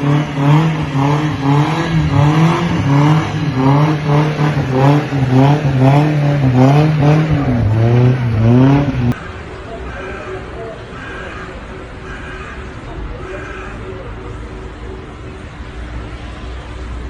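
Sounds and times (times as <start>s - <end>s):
car engine revving: 0.0s - 9.2s
tyres spinning in snow: 0.0s - 9.2s.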